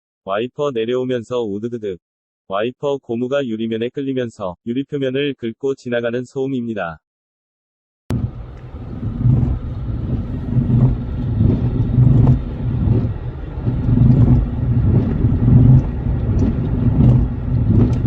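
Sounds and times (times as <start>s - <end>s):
windshield wiper chattering on glass: 8.1s - 18.0s.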